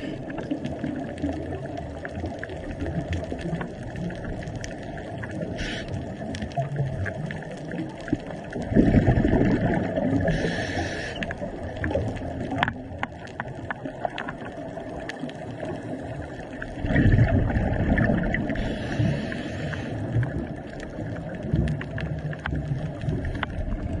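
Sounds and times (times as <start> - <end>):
bubbles gurgling underwater: 0.0 - 24.0
regulator inhalation hiss: 5.5 - 6.0, 10.2 - 11.4, 18.6 - 20.1.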